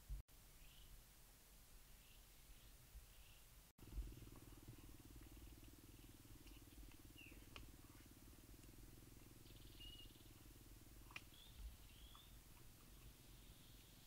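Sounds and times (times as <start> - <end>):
faint low rumble: 0.0 - 14.0
faint high chirps: 1.9 - 14.0
faint clicks: 10.3 - 13.2.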